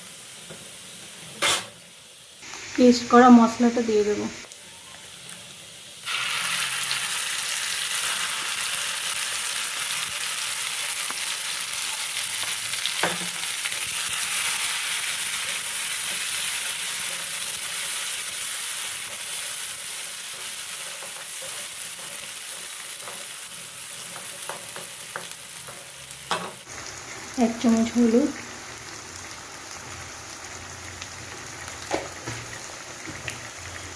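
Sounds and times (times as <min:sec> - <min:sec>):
paste sizzling in hot oil: 0:00.0 - 0:33.9.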